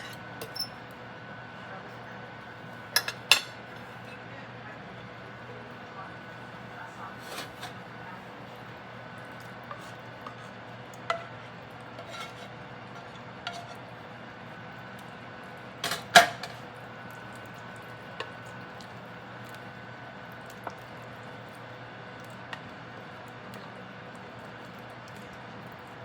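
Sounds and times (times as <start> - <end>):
kitchen utensils clinking: 0.0 - 0.8, 2.9 - 4.1, 7.0 - 7.9, 15.8 - 16.6.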